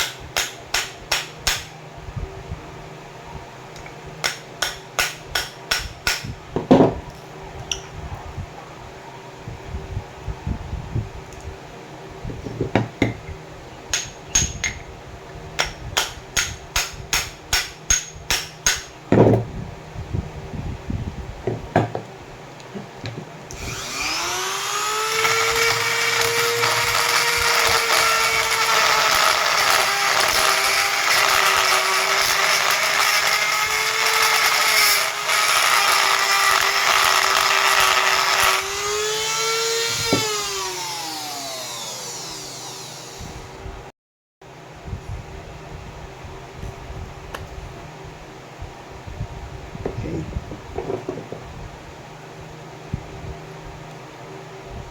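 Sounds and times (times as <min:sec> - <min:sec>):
small power tool whining: 0:23.5 - 0:43.6.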